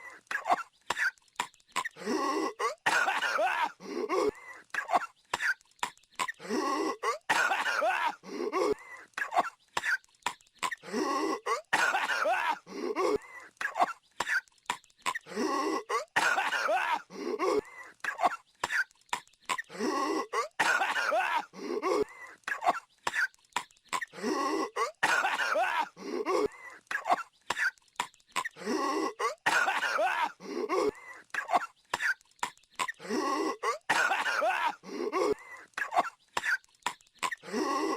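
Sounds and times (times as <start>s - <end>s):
cartoon character coughing: 10.6s - 14.4s, 15.8s - 18.9s, 20.3s - 23.3s, 28.4s - 32.2s, 32.8s - 36.6s.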